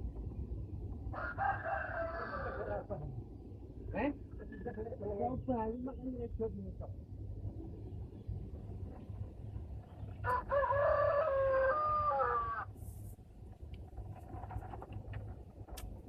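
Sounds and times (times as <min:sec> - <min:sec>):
rooster crowing: 0:01.1 - 0:02.9, 0:10.2 - 0:12.7.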